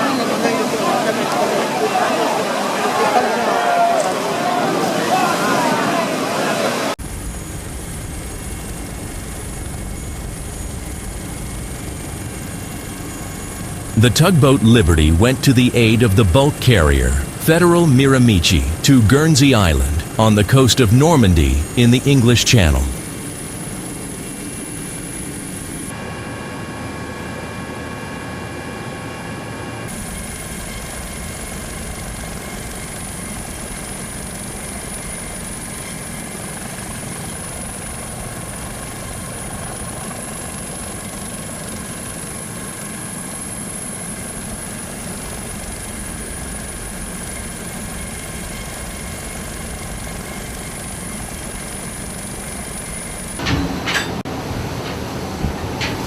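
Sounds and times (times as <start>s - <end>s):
helicopter turbine and rotor noise: 7.0s - 14.0s, 23.0s - 54.8s.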